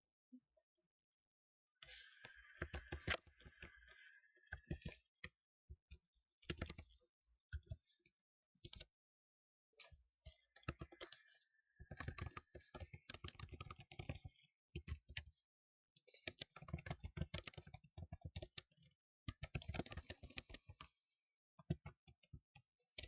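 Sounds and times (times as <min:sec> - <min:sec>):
computer keyboard typing: 0:10.6 - 0:15.2, 0:16.3 - 0:18.7.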